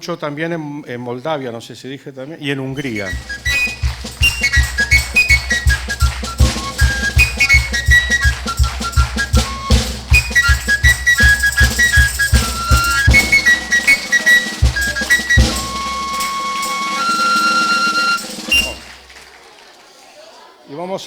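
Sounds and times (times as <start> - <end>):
overtone flute melody: 2.8 - 19.1
fast steady drum beat: 2.8 - 19.4.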